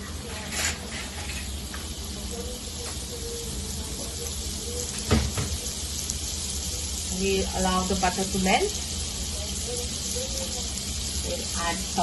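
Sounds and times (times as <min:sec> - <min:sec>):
butter sizzling in a pan: 0:00.0 - 0:12.0
knock: 0:05.1 - 0:05.6.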